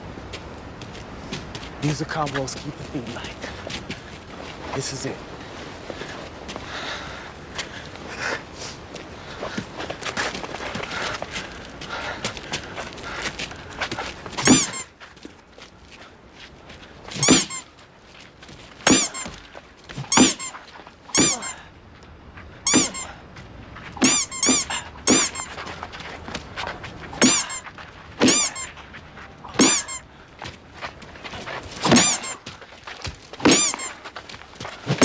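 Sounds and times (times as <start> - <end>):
squeaky toy squeaks: 14.4 - 14.9, 17.2 - 17.7, 18.9 - 19.4, 20.0 - 21.6, 22.7 - 23.1, 24.0 - 25.6, 27.2 - 27.6, 28.2 - 28.7, 29.5 - 30.0, 31.8 - 32.4, 33.4 - 34.0.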